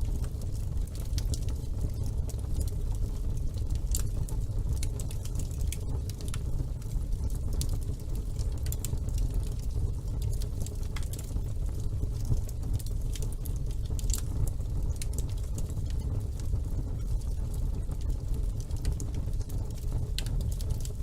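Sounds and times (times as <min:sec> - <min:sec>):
fire crackling and popping: 0:00.0 - 0:21.0
fire flame rumble: 0:00.0 - 0:21.0.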